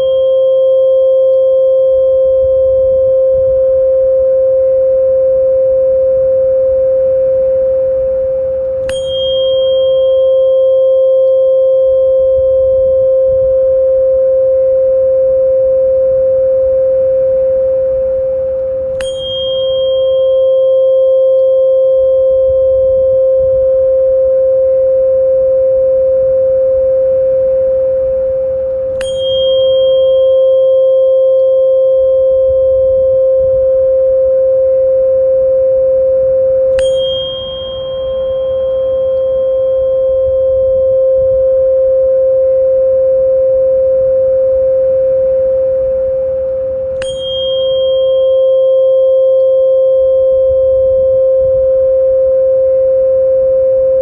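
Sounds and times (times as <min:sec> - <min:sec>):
click with high ring: 0:00.0 - 0:03.0, 0:08.7 - 0:12.9, 0:18.6 - 0:23.1, 0:28.7 - 0:33.1, 0:36.7 - 0:41.3, 0:46.8 - 0:51.6
steady electronic pure tone: 0:00.0 - 0:54.0.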